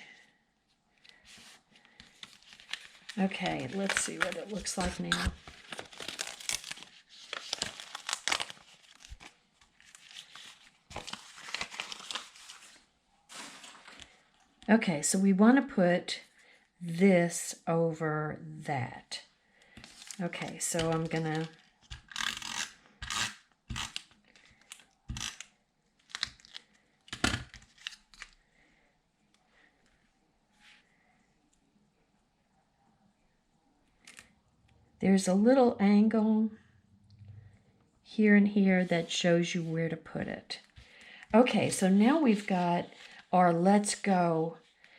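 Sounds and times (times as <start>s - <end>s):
paper and cardstock rustling: 1.0s - 14.6s, 19.8s - 22.6s, 40.8s - 43.3s.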